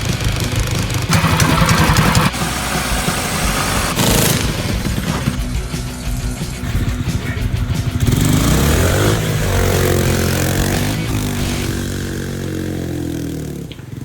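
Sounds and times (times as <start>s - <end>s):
small engine revving: 0.0s - 14.0s.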